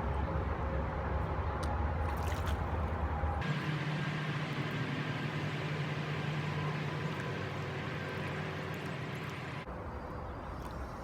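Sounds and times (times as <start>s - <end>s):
boat motor humming: 2.2s - 9.7s.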